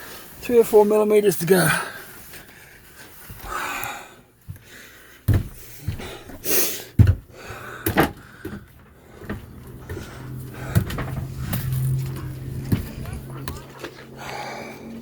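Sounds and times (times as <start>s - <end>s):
low steady hum: 7.0s - 15.0s.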